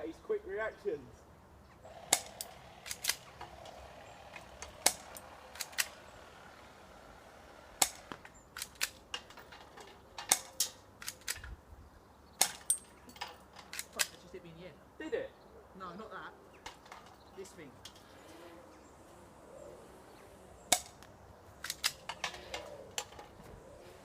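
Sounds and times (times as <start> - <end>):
airsoft pistol shots: 2.1 - 3.3.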